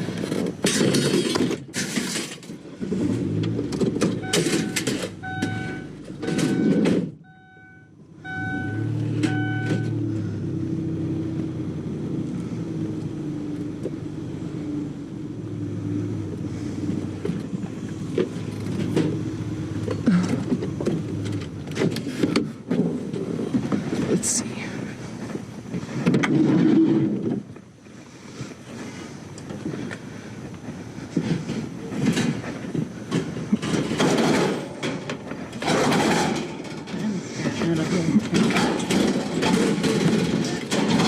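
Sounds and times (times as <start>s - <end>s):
minivan engine running: 0.0s - 41.0s
minivan chime beeping: 4.2s - 10.0s
appliance knocking and clattering: 31.2s - 41.0s.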